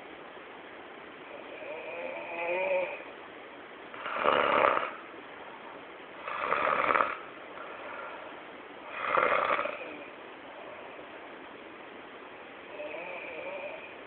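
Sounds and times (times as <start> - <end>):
loud rasping snores: 1.3 - 3.0, 4.0 - 5.0, 6.2 - 8.1, 8.9 - 10.9, 12.7 - 14.0.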